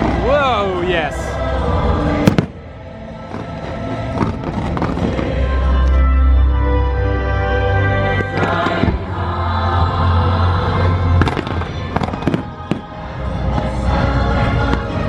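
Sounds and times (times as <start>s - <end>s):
fireworks bangs: 0.0s - 0.4s, 2.1s - 5.6s, 10.8s - 13.9s
orchestral soundtrack music: 0.0s - 15.0s.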